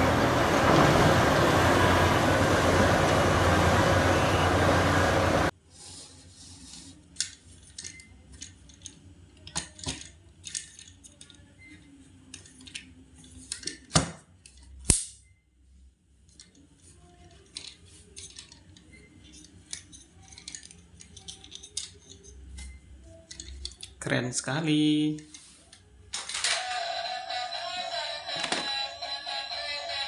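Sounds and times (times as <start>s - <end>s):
plastic toys and packaging handled: 16.2s - 24.1s, 25.0s - 26.8s.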